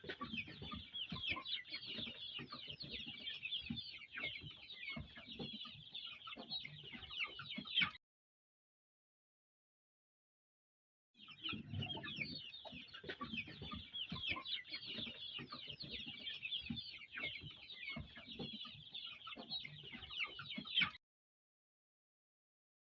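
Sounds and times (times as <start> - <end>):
chickens peeping: 0.0 - 8.0, 11.2 - 21.0.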